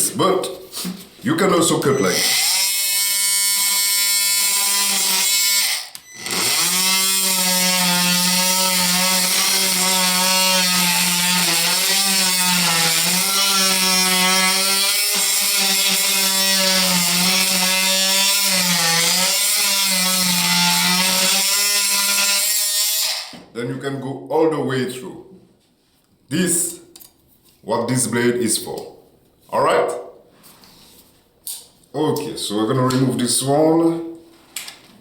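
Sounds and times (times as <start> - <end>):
oscillating multi-tool cutting wood: 2.1 - 23.4.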